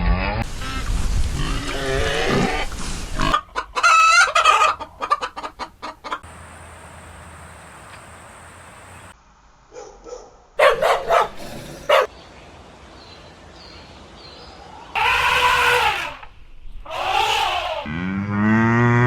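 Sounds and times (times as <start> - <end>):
chicken clucking: 3.2 - 6.3
dog barking: 9.7 - 12.1
cow mooing: 17.2 - 19.0.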